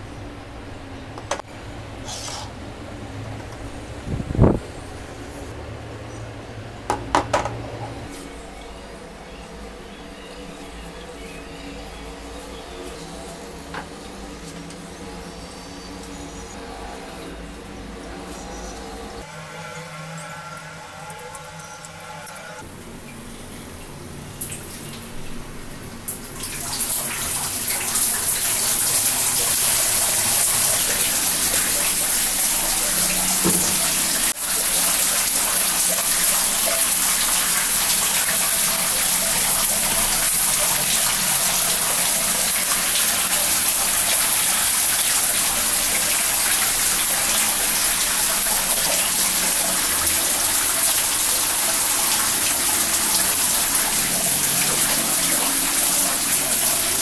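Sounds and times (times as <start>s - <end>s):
shower water spraying: 26.2s - 57.0s.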